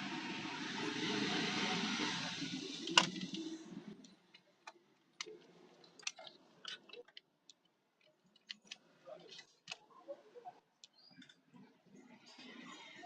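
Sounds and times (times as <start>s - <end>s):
steady hiss: 0.0s - 4.2s
light clicks and ticks: 10.8s - 11.7s.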